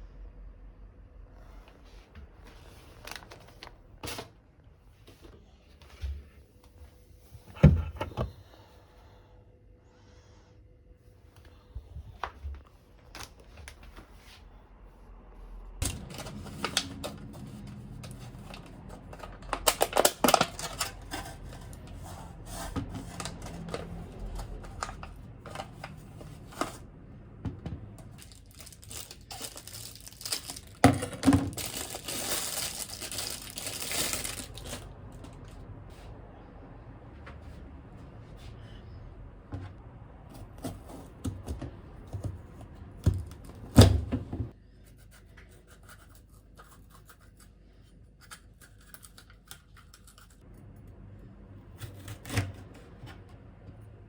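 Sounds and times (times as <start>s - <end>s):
plastic packaging crinkling and tearing: 15.8s - 21.9s, 28.2s - 35.3s.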